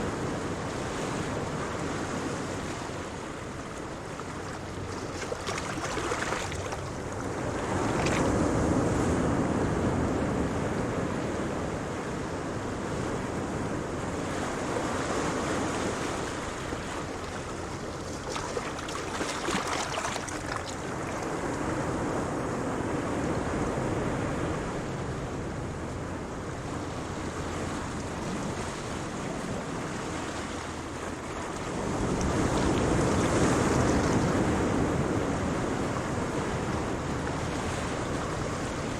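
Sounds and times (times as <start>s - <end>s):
ocean waves breaking: 0.0s - 38.9s.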